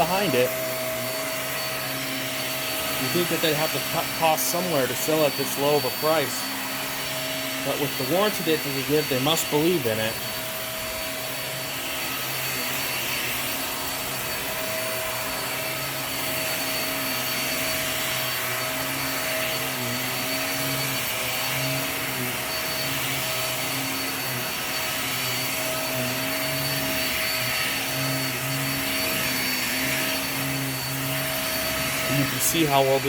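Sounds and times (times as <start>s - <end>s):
vacuum cleaner running on carpet: 0.0s - 33.0s.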